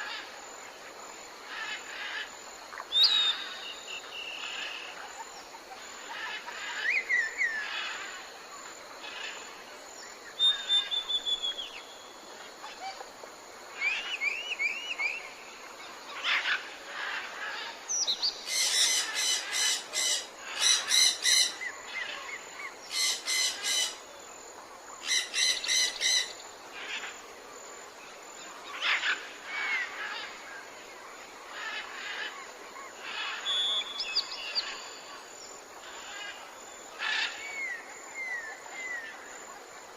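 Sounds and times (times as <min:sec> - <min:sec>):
background hiss: 0:00.0 - 0:39.9
birds whistling and trilling: 0:02.9 - 0:04.6, 0:10.4 - 0:12.0, 0:13.8 - 0:15.4, 0:33.2 - 0:34.9.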